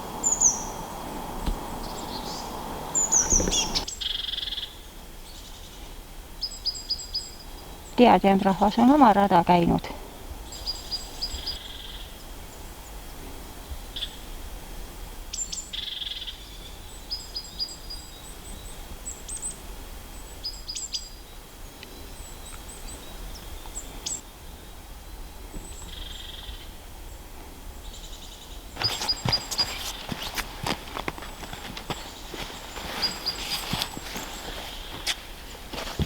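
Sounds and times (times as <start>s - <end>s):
small birds chirping: 0.0s - 5.8s, 10.4s - 12.6s, 27.8s - 36.0s
footsteps crunching on trail: 28.8s - 36.0s.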